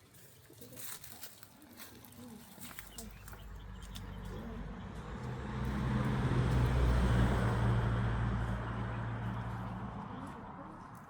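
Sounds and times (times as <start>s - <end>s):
vehicle passing by: 3.2s - 11.0s.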